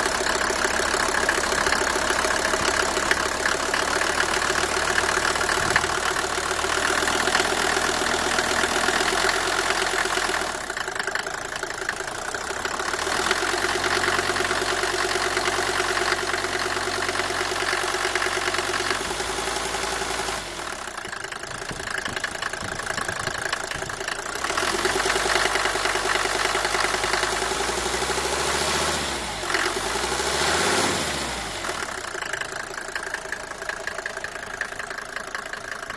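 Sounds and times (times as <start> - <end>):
diesel engine running: 0.0 - 35.9
engine revving: 12.9 - 20.9, 24.3 - 32.0.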